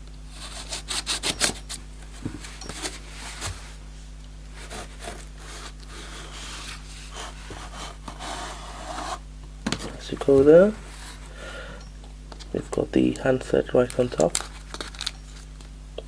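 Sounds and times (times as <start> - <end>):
low electrical hum: 0.0 - 16.0
packaging rubbing and scraping: 0.3 - 3.8, 4.5 - 9.2, 13.8 - 15.5.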